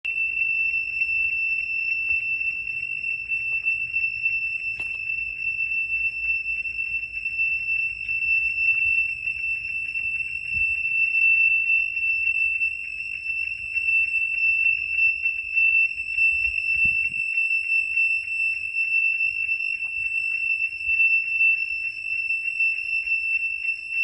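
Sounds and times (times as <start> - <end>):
high-pitched alarm tone: 0.0 - 24.0.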